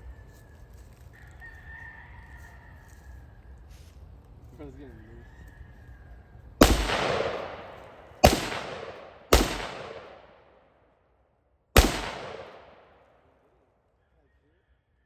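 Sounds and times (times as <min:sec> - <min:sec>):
gunshots with long echo: 0:06.6 - 0:10.8, 0:11.8 - 0:13.3.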